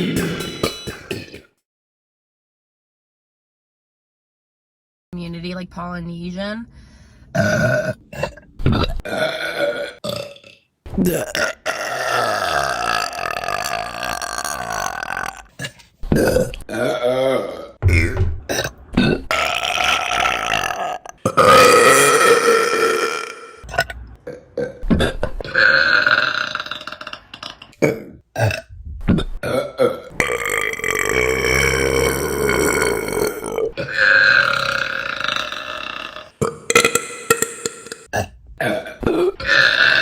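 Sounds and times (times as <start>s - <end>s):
women belching: 7.4s - 28.7s, 29.4s - 40.0s.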